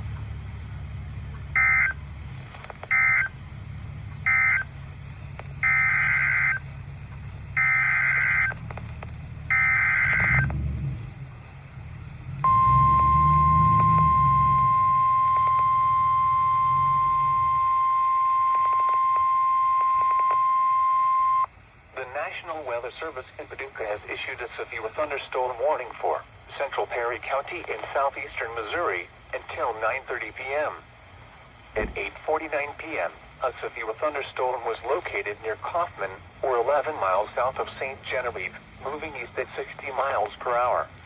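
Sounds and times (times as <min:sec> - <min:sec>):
steady single-pitch alert tone: 0:12.4 - 0:21.5
warbling data bursts: 0:12.5 - 0:21.5.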